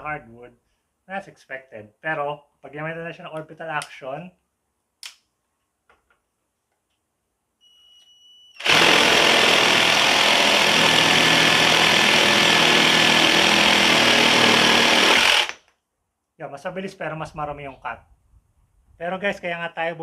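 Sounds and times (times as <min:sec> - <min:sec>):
jigsaw sawing wood: 0:08.6 - 0:15.6.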